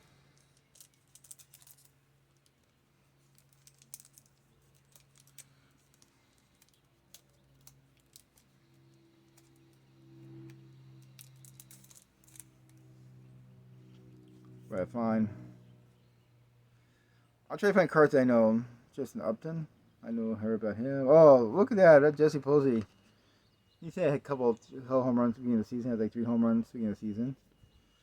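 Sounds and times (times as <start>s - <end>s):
trading cards rustling: 0.0s - 13.1s
faint low hum: 0.0s - 28.0s.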